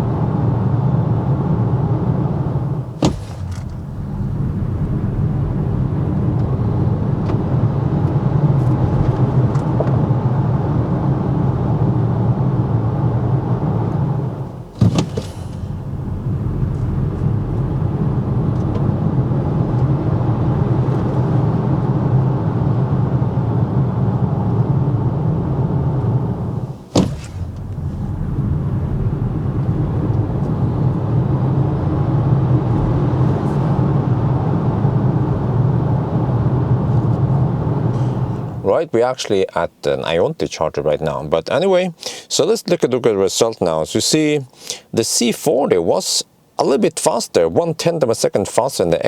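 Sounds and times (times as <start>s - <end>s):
road and tyre noise in car: 0.0s - 38.7s.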